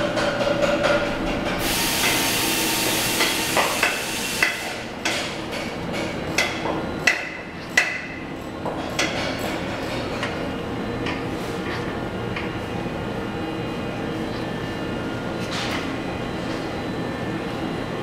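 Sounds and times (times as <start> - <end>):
loud hiss: 1.6 - 4.8.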